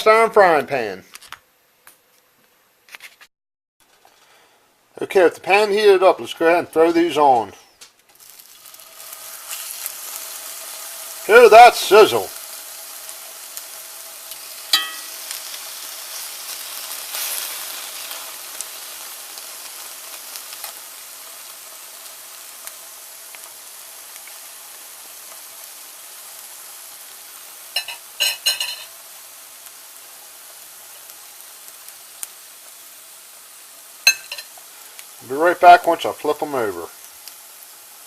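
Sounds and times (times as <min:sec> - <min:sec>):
steaks sizzling in a frying pan: 0:08.1 - 0:38.0.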